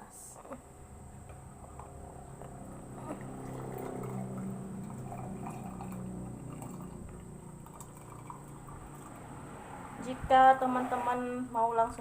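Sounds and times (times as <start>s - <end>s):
tea pouring into a glass: 3.1s - 9.2s.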